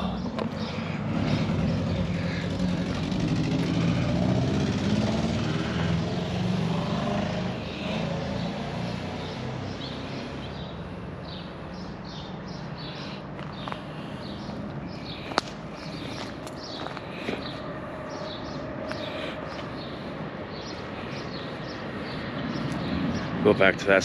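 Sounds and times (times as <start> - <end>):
vehicle engine driving past: 0.0 - 11.0.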